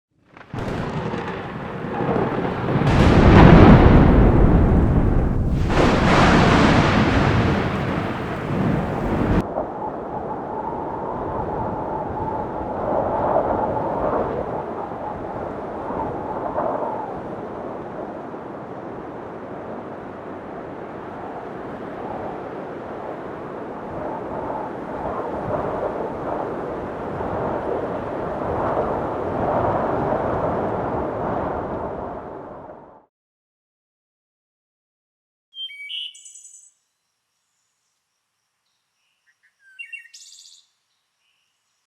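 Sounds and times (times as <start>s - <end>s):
thunder rumbling: 0.3s - 33.0s.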